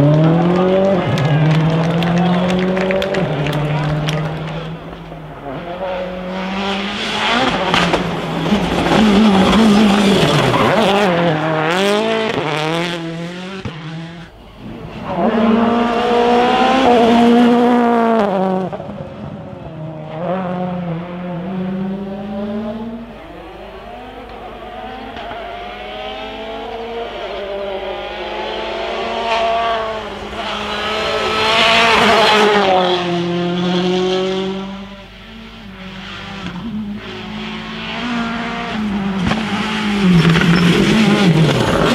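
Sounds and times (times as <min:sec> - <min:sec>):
rally car engines revving: 0:00.0 - 0:41.9.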